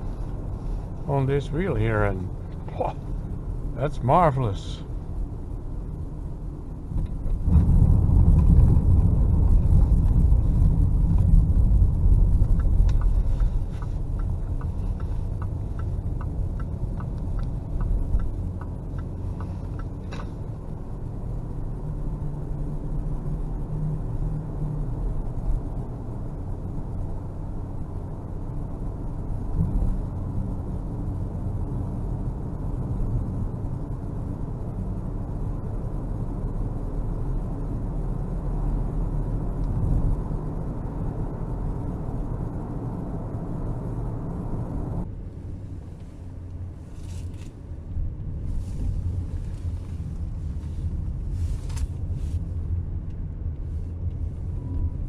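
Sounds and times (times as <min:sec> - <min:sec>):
car engine and road rumble: 0:00.0 - 0:55.0
light ticking: 0:12.4 - 0:20.4.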